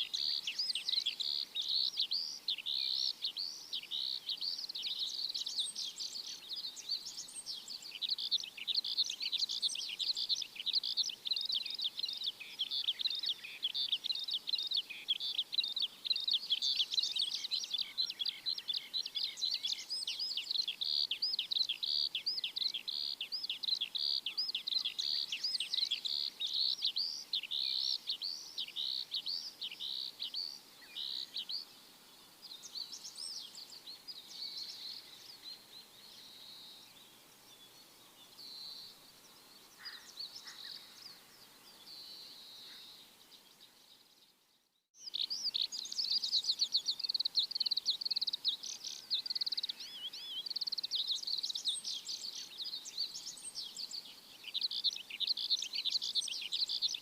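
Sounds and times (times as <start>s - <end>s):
small birds chirping: 0.0s - 57.0s.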